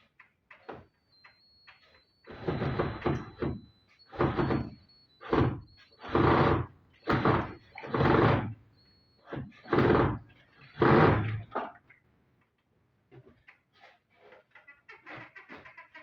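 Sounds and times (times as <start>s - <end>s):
noisy scraping strokes: 2.3s - 8.6s, 9.2s - 11.6s.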